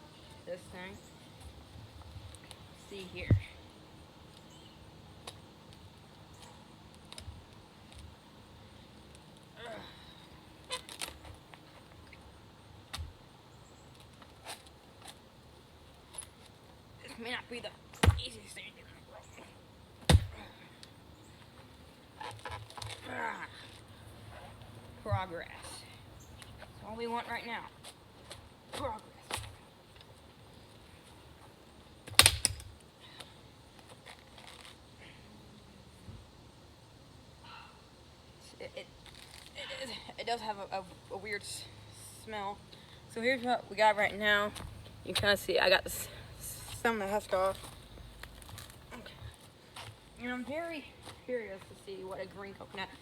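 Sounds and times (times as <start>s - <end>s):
dull thump: 3.2s - 3.5s, 20.1s - 20.4s
sharp cracks: 32.1s - 32.7s.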